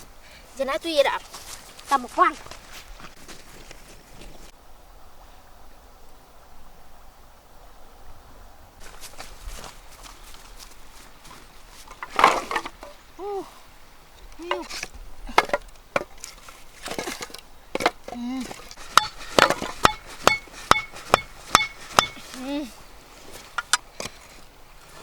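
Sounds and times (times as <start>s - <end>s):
blade chopping on wood: 18.8s - 22.2s.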